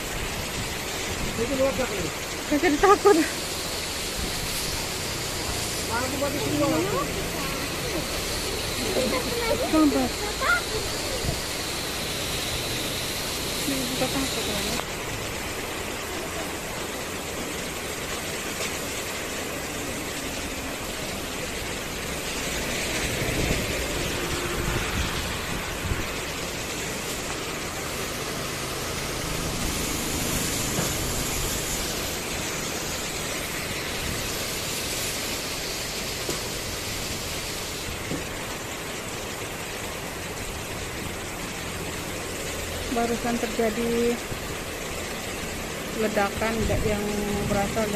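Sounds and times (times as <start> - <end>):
heavy rain: 0.0 - 47.9
strong gusting wind: 7.0 - 13.6, 21.6 - 26.8, 28.9 - 35.0.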